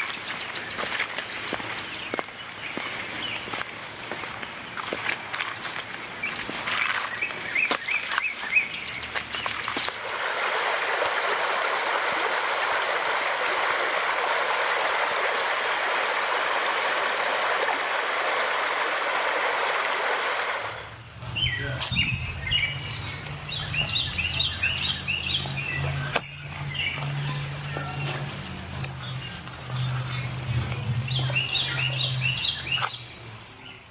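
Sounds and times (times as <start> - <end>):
birds chirping: 0.0 - 10.0, 20.7 - 33.9
small stream babbling: 0.0 - 33.8
low steady hum: 8.8 - 33.8.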